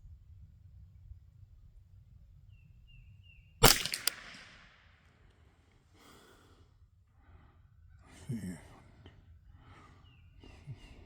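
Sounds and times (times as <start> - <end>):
rifle shot with echo: 3.6 - 5.0
soft rifle clicks: 3.6 - 5.4.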